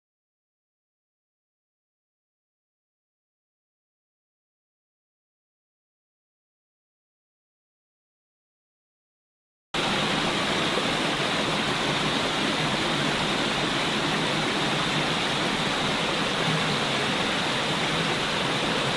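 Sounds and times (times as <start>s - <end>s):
rushing water roar: 9.8s - 18.9s.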